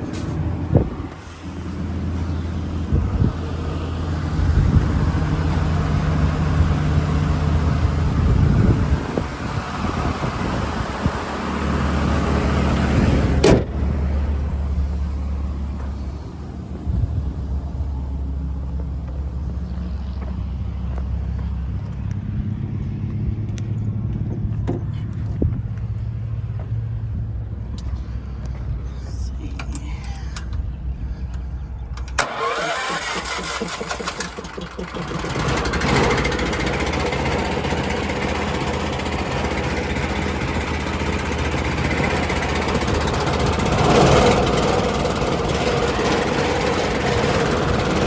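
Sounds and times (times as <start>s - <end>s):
engine idling: 23.5s - 48.0s.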